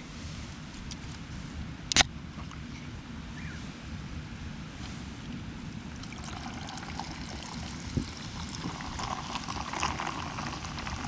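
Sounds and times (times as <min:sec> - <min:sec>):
sharp click: 0:01.9 - 0:02.1
carbonation fizzing: 0:06.0 - 0:11.0
drink pouring into glass: 0:06.0 - 0:11.0.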